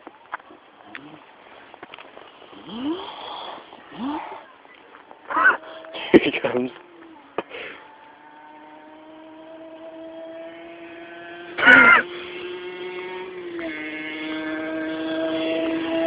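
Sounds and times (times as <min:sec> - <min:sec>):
two-stroke motorcycle engine running: 0:00.9 - 0:16.0
loud wavering cry: 0:05.3 - 0:07.3, 0:11.6 - 0:12.2.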